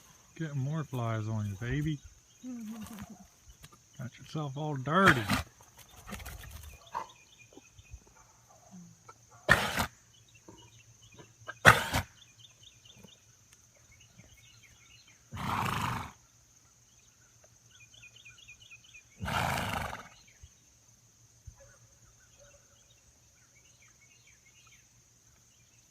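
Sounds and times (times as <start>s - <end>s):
horse coughing: 9.5s - 9.9s, 11.4s - 12.1s.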